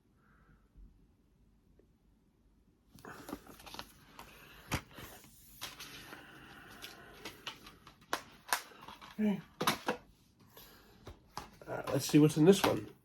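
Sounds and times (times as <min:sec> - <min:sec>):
paper rustling: 0:03.0 - 0:09.4.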